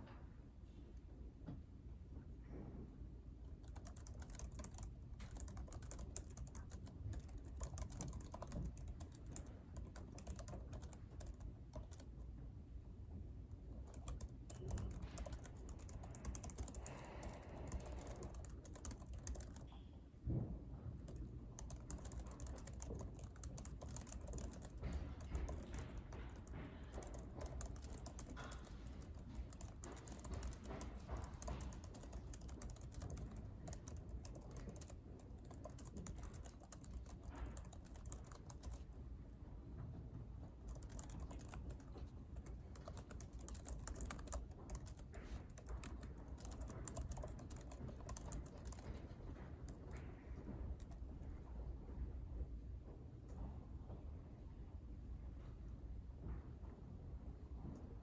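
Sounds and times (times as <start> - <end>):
low room hum: 0.0 - 58.0.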